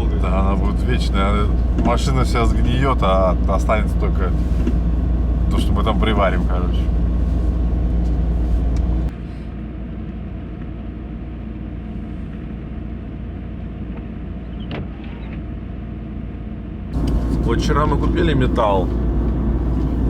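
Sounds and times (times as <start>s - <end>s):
car rumble inside cabin: 0.0s - 9.2s, 16.9s - 20.0s.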